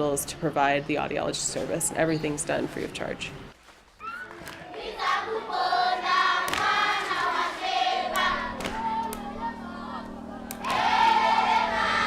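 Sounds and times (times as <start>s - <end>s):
group of voices singing: 4.6s - 12.0s.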